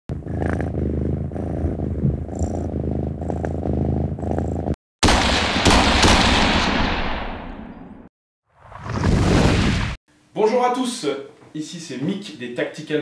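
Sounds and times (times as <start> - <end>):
cat purring: 0.1 - 4.8.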